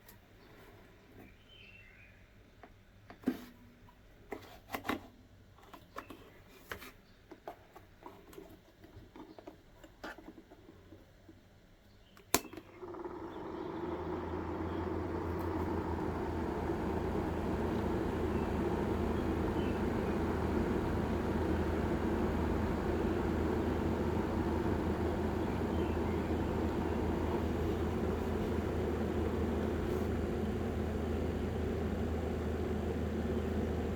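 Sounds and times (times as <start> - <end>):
small fan motor humming: 12.4 - 33.9.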